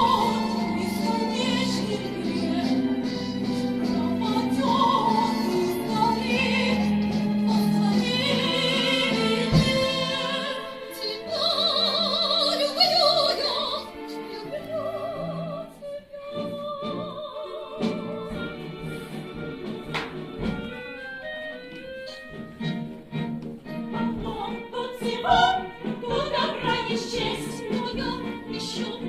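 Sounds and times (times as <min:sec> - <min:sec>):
operatic singing voice: 0:00.0 - 0:03.0, 0:03.6 - 0:18.1, 0:23.9 - 0:29.0
instrumental accompaniment: 0:00.0 - 0:29.0.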